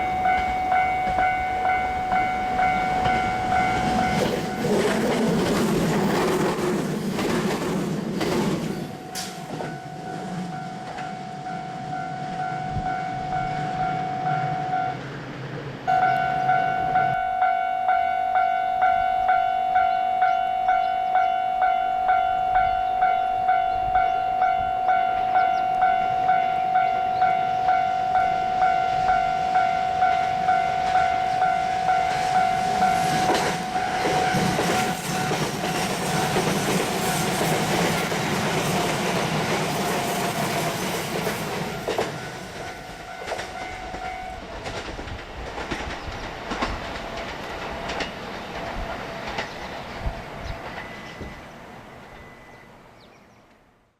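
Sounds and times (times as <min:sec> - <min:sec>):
level crossing bell dinging: 0:00.0 - 0:04.7, 0:15.9 - 0:34.7
train wheels clicking over rail joints: 0:00.0 - 0:11.2, 0:30.0 - 0:51.5.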